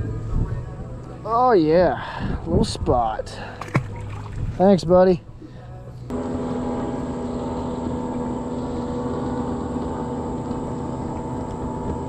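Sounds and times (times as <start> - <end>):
boat motor running: 5.4 - 12.0.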